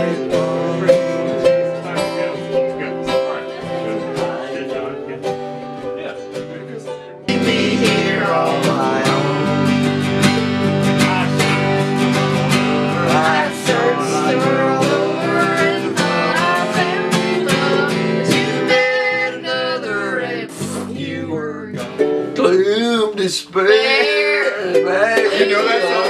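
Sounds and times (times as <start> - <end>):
acoustic guitar country tune: 0.0 - 26.0.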